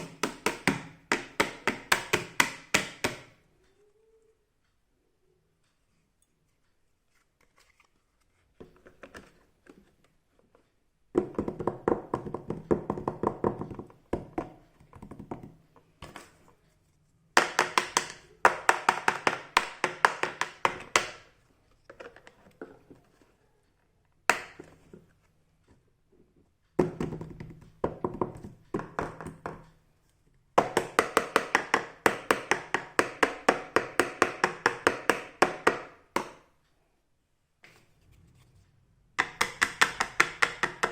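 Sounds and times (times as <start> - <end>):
plastic toy pieces tapping: 17.4 - 21.3, 39.2 - 40.9.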